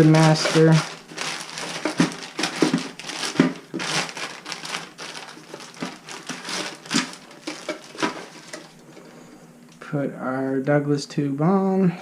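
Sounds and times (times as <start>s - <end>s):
plastic packaging crinkling: 0.0s - 9.2s.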